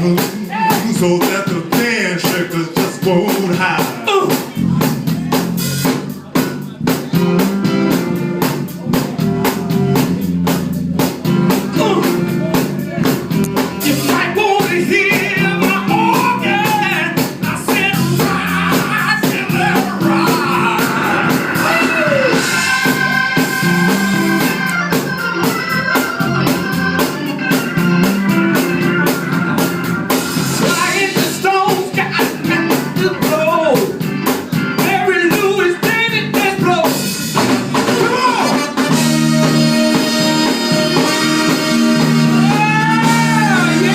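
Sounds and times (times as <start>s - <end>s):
person singing: 0.0s - 5.3s, 11.4s - 37.0s, 39.7s - 43.9s
drum beat and bass: 0.0s - 43.9s.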